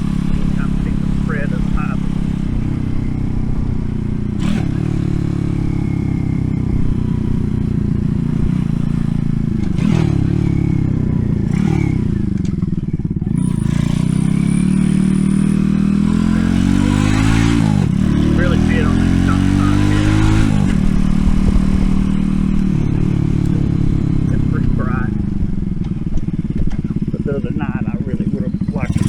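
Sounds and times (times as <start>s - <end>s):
small motorcycle engine revving: 0.0s - 29.0s.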